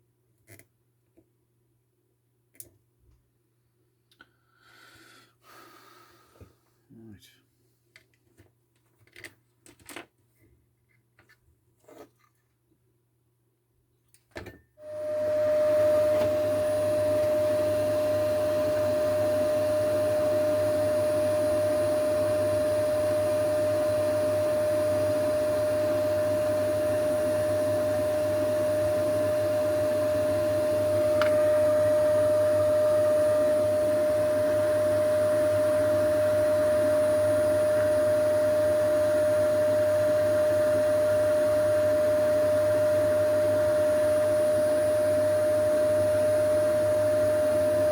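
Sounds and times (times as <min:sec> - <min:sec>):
blower motor whining: 0:14.8 - 0:47.9.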